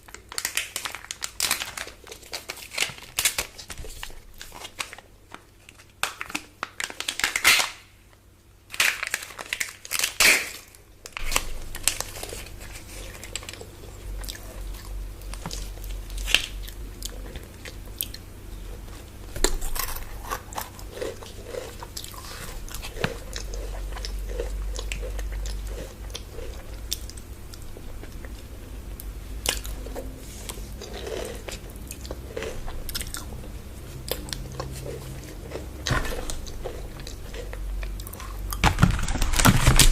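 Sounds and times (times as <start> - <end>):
chocolate bar crunching: 0.0 - 7.9, 8.7 - 39.9
chewing with wet mouth clicks: 13.0 - 28.4, 34.0 - 38.6.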